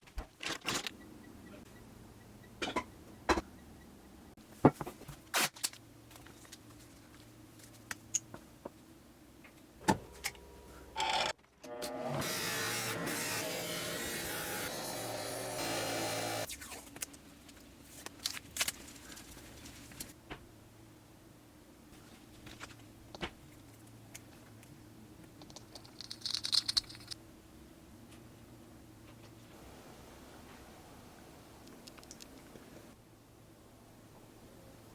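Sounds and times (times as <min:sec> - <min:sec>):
faint steady hum: 0:17.1 - 0:34.9.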